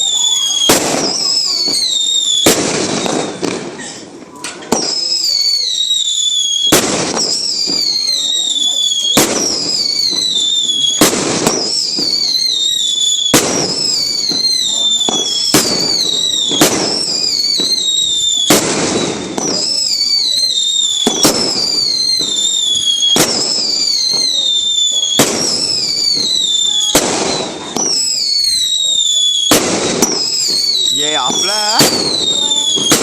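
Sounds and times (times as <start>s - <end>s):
firework bangs: 0.0s - 33.0s
warbling firework whistles: 0.0s - 33.0s.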